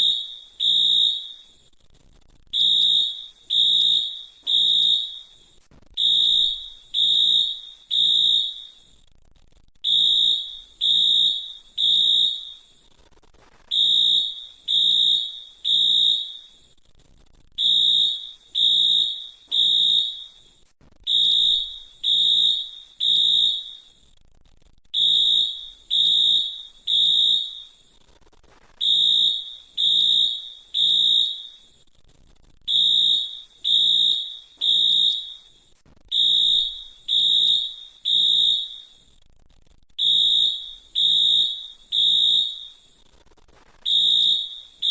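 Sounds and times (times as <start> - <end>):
fire alarm beeping: 0.0 - 1.6, 2.6 - 5.4, 6.0 - 8.9, 9.8 - 12.7, 13.7 - 16.7, 17.6 - 20.4, 21.1 - 24.0, 25.0 - 27.8, 28.8 - 31.8, 32.7 - 39.0, 40.0 - 42.9, 43.9 - 44.9.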